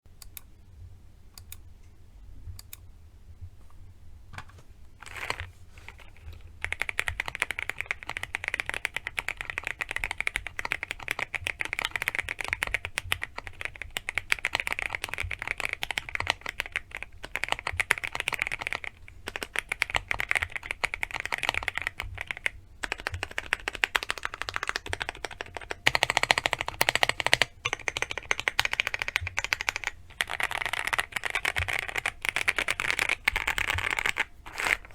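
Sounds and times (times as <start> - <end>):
mechanical keyboard typing: 5.0 - 34.9.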